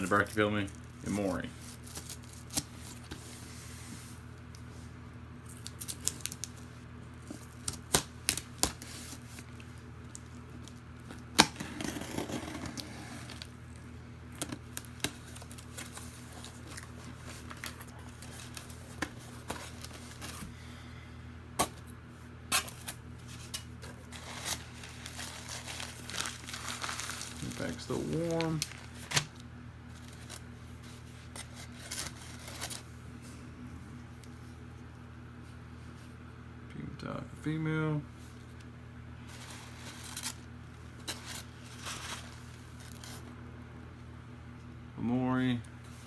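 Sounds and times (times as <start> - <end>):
steady low hum: 0.0 - 46.0
packaging rustling and snipping: 5.5 - 20.5, 22.5 - 32.9.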